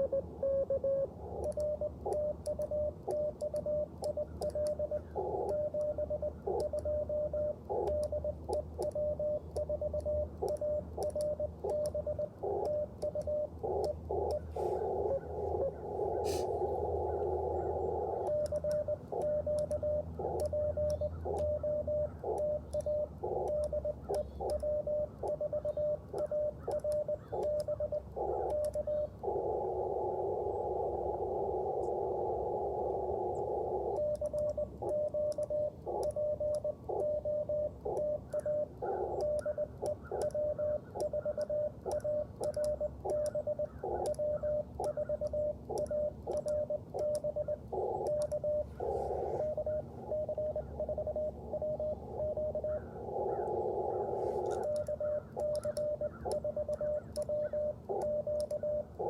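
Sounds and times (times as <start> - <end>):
morse code tone: 0.0 - 28.9, 33.8 - 52.8, 54.2 - 59.0
receiver hiss: 8.8 - 20.6
faint paddle key clicks: 54.4 - 58.6.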